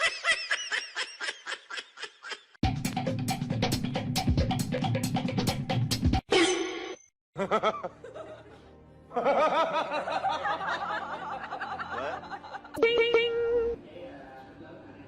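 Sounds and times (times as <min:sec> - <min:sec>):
laughter: 0:00.0 - 0:02.6, 0:07.4 - 0:12.8
music: 0:02.6 - 0:06.2, 0:07.4 - 0:13.9.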